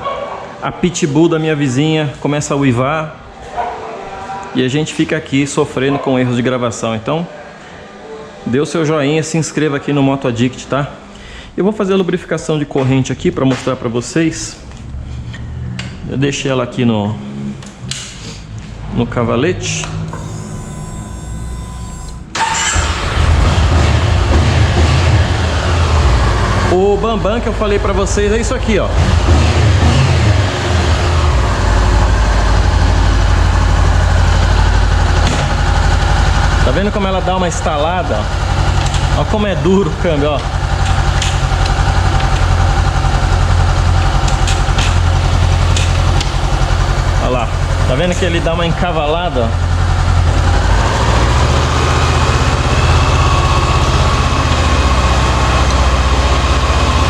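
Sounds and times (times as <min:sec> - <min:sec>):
faint steady whine: 0:20.1 - 0:22.4
motorcycle engine running: 0:22.7 - 0:57.0.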